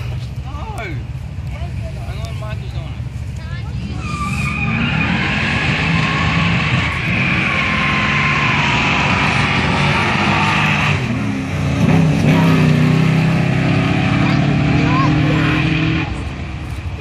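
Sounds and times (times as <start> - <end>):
engines running at high revs: 3.8 - 17.0.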